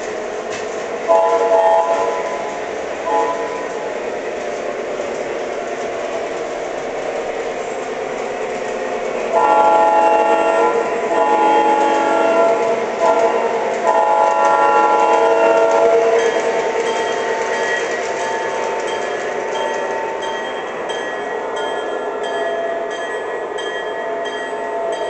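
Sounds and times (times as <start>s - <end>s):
model train rolling on track: 0.0s - 25.0s
train horn blasts: 1.1s - 2.4s, 3.0s - 3.7s, 9.3s - 16.4s.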